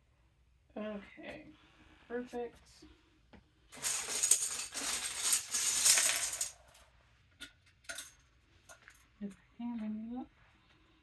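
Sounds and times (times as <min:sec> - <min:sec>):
small hard objects rattling: 0:03.8 - 0:06.6.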